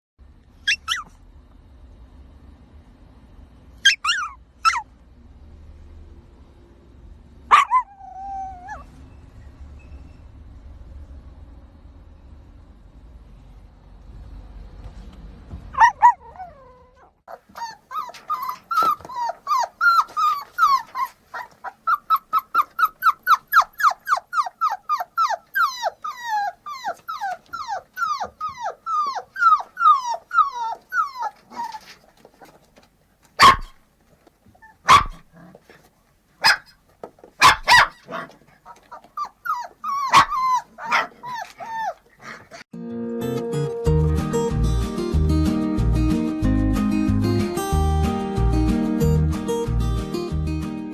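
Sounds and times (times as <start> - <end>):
puppies yelping: 0.7 - 1.1, 3.8 - 4.9, 7.5 - 8.9, 15.8 - 32.6, 33.4 - 33.8, 34.6 - 35.5, 37.4 - 42.7
puppy barking: 0.7 - 1.1, 3.8 - 4.9, 7.5 - 8.8, 15.8 - 16.7, 33.4 - 33.8, 34.6 - 35.6, 36.4 - 36.8, 37.4 - 42.6.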